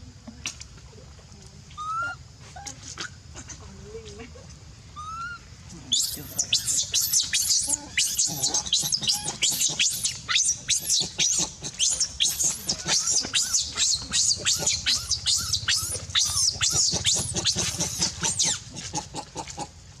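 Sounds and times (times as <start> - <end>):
monkey squealing calls: 1.8 - 2.2, 5.0 - 19.3.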